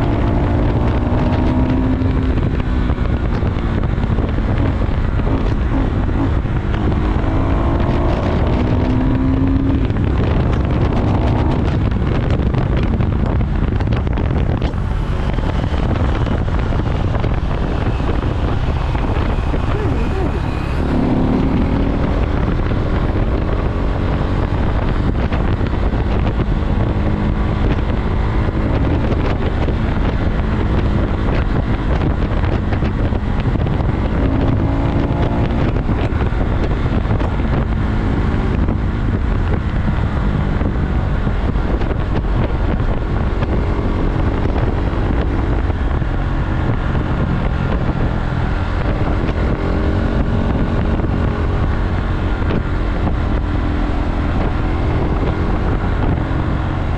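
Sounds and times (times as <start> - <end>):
motorcycle engine revving: 0.0 - 56.9
wind noise on microphone: 0.0 - 56.9.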